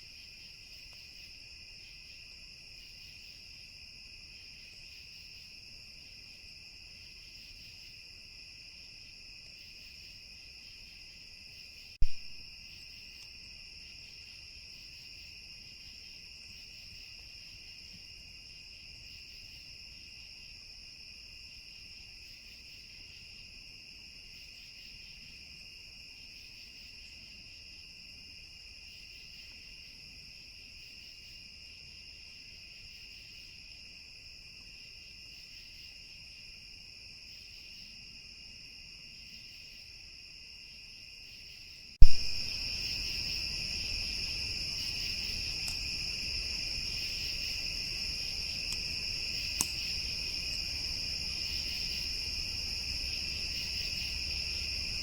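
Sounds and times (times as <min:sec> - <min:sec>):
crickets trilling: 0:00.0 - 0:55.0
slow pulsing insect call: 0:00.0 - 0:55.0
sharp loud knock: 0:12.0 - 0:12.3, 0:42.0 - 0:42.4.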